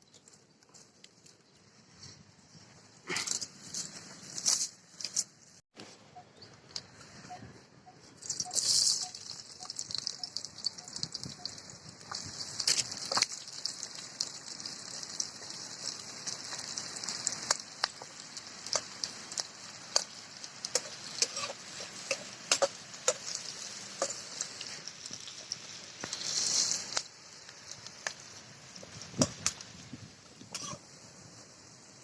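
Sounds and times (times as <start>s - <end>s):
pops and crackles of frying: 0.0s - 2.2s, 8.0s - 32.0s
pork sizzling in a pan: 8.2s - 32.0s.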